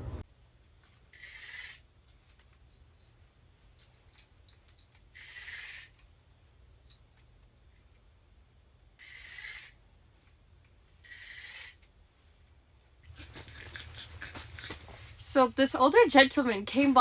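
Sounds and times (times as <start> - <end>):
fishing reel ratcheting: 1.1 - 1.9, 5.0 - 6.0, 9.0 - 9.8, 11.0 - 11.8.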